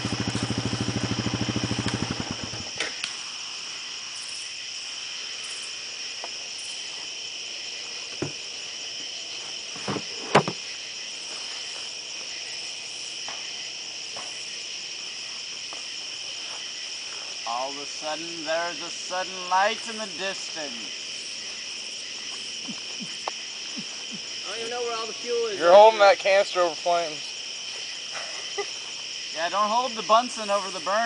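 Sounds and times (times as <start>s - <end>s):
small engine idling: 0.0s - 2.8s
crickets chirping: 0.0s - 31.0s.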